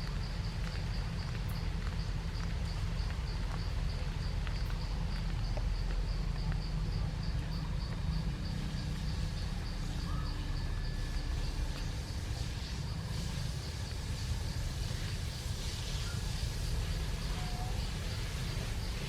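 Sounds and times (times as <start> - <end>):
insect chirping: 0.0 - 19.0.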